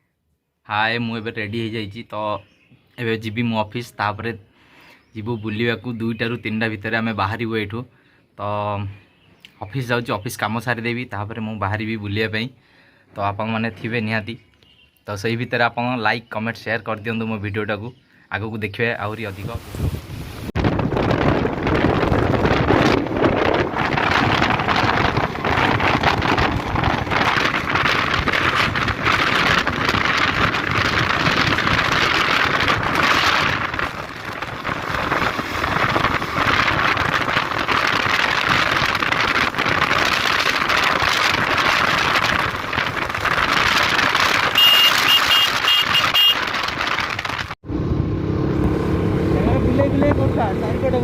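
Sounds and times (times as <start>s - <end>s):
wind noise on microphone: 19.0s - 51.0s
moving vehicle: 19.4s - 51.0s
short high beeps: 44.6s - 46.4s.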